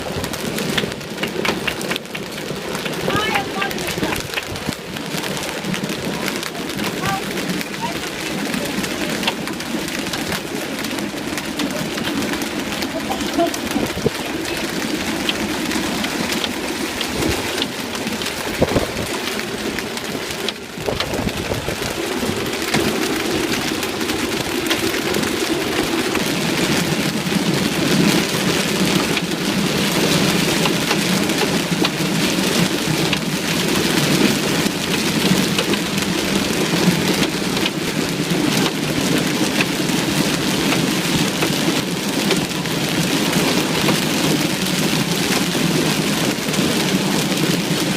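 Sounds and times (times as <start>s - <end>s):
heavy hail clattering: 0.0s - 47.9s.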